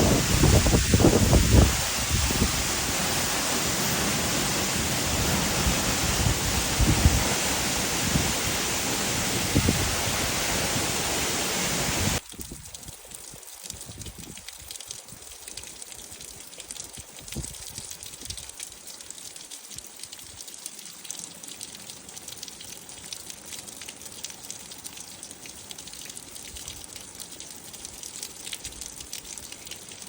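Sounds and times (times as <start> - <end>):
running water splashing: 0.0 - 16.6.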